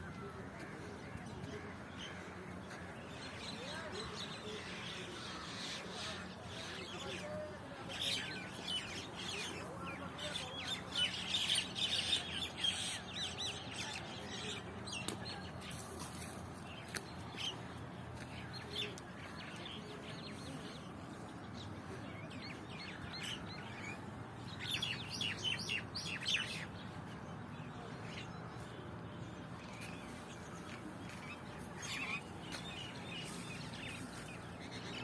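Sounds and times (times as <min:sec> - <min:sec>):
road traffic hum: 0:00.0 - 0:35.0.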